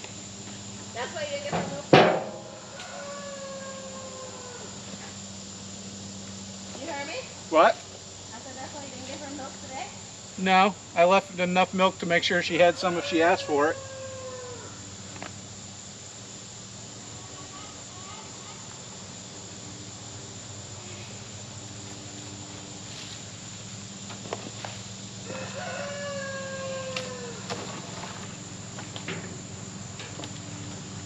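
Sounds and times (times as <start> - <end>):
steady low hum: 0.0 - 31.0
rooster crowing: 2.4 - 5.0, 12.4 - 15.0, 25.2 - 27.6.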